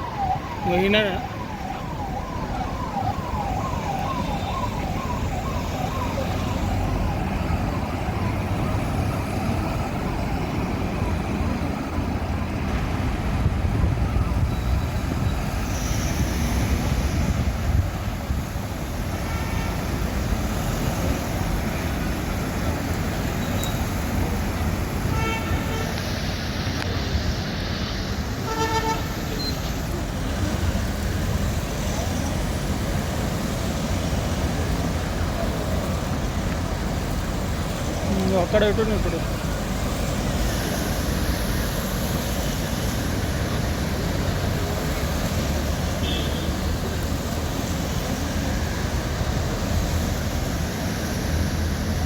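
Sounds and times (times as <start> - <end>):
road traffic rumble: 0.0 - 52.0
vehicle siren: 0.0 - 52.0
vehicle horn: 19.2 - 19.8, 25.0 - 26.0, 28.4 - 29.2, 46.0 - 46.5.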